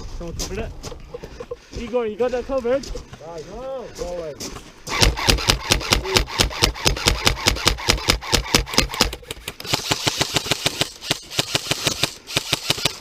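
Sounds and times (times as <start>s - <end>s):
airsoft gun firing full-auto: 4.9s - 13.0s.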